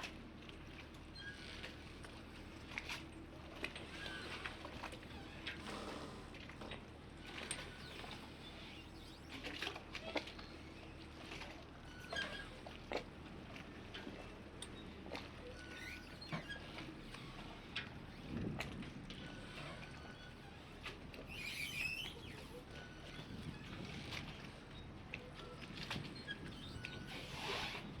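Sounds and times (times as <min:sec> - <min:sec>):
short squeaks: 0:07.5 - 0:11.0, 0:11.8 - 0:12.6, 0:14.7 - 0:18.3, 0:19.2 - 0:24.5, 0:25.2 - 0:28.0.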